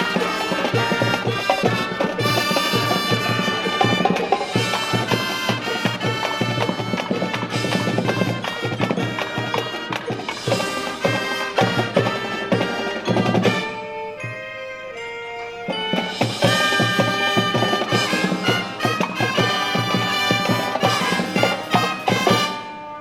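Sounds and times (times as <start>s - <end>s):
marching band brass and drums: 0.0s - 23.0s.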